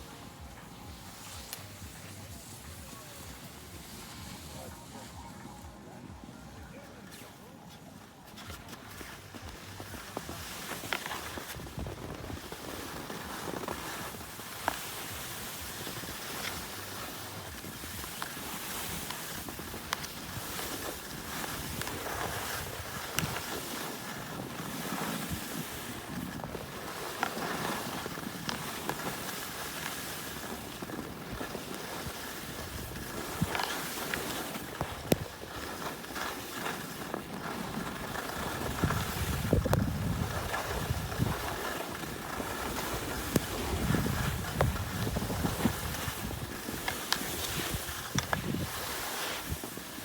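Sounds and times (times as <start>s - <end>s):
skis sliding on snow: 0.0s - 50.0s
wind on microphone: 11.4s - 13.4s, 37.7s - 50.0s.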